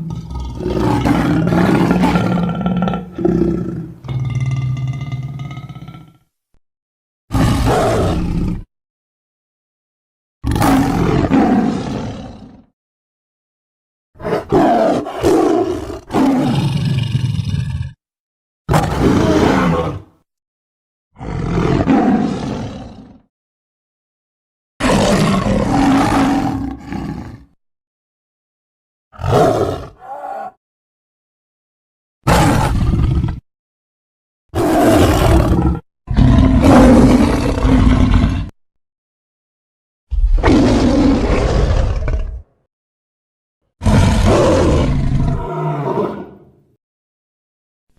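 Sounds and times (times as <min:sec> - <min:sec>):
big cat roars and snarls: 0:00.0 - 0:06.3, 0:07.3 - 0:08.7, 0:10.4 - 0:12.8, 0:14.2 - 0:18.0, 0:18.7 - 0:20.2, 0:21.2 - 0:23.3, 0:24.8 - 0:27.6, 0:29.2 - 0:30.6, 0:32.2 - 0:33.4, 0:34.6 - 0:38.6, 0:40.1 - 0:42.6, 0:43.8 - 0:46.8.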